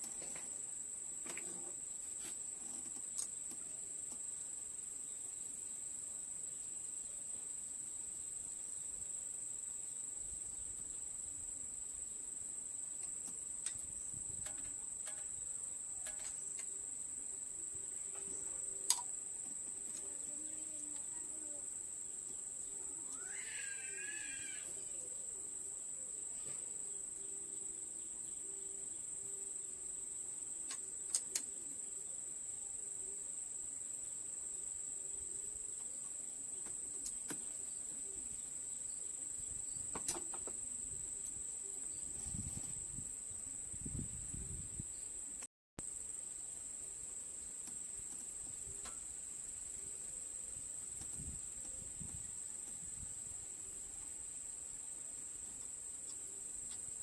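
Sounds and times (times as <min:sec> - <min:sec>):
insect trilling: 0:13.0 - 0:33.0
sharp clicks: 0:18.9 - 0:19.1.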